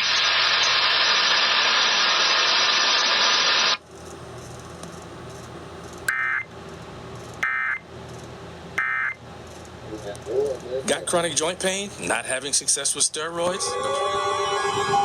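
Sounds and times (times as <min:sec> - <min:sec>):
loud radio static hiss: 0:00.0 - 0:03.8
data-burst screeches: 0:13.4 - 0:15.0.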